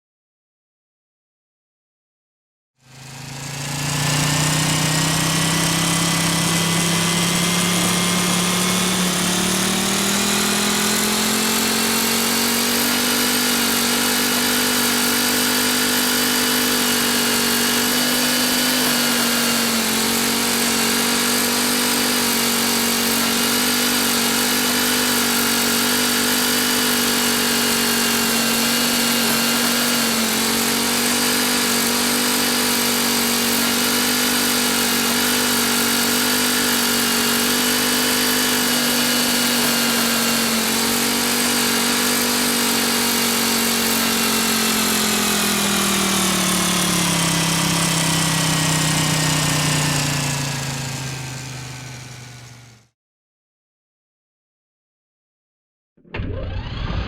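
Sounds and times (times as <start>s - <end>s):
engine humming: 2.9s - 14.8s, 56.1s - 57.0s.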